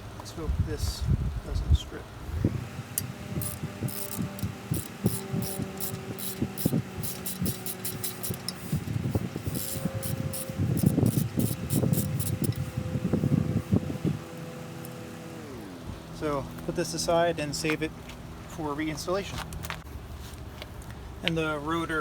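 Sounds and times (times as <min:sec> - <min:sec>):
power driver motor humming: 0:02.3 - 0:17.6.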